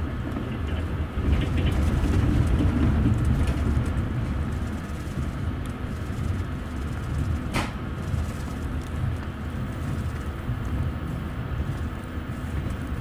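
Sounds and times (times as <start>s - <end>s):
rail clicks: 0.0s - 4.7s
train wheels rumbling on rails: 0.0s - 13.0s.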